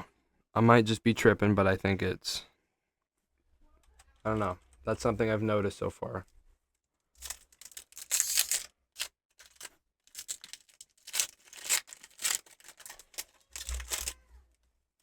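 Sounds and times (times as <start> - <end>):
card packs crinkling: 7.2 - 14.3
foil wrapper tearing: 7.2 - 14.4.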